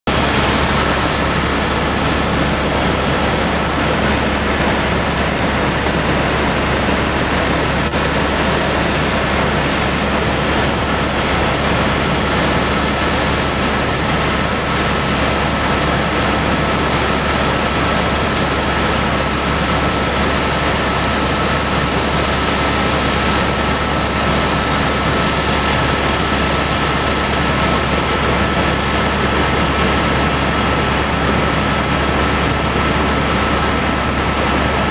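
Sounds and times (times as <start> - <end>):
helicopter engine and rotor: 0.1 - 34.9.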